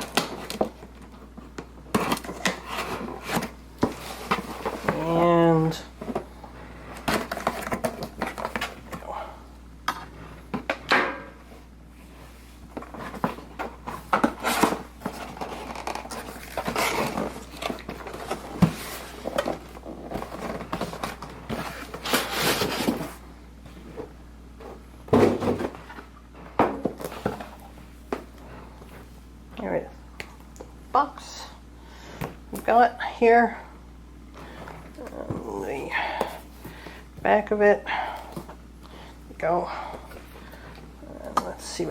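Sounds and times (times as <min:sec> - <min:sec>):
cardboard rustling and scraping: 0:00.0 - 0:09.1, 0:11.4 - 0:29.2.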